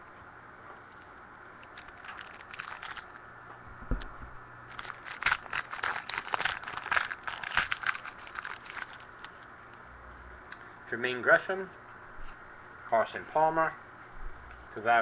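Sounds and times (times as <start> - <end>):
plastic wrapper tearing and crinkling: 1.6 - 3.2, 4.7 - 9.4.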